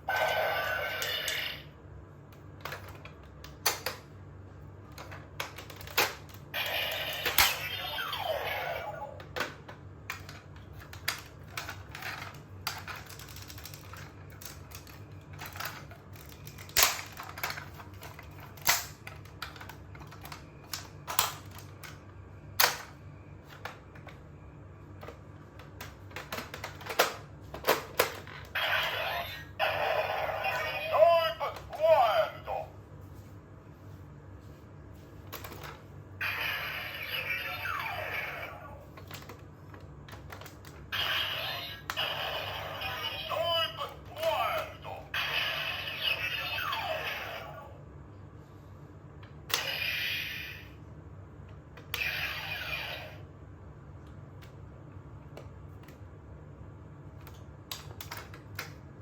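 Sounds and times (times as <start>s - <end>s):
faint low hum: 0.0s - 59.0s
plastic toy clicks and snaps: 15.4s - 22.0s.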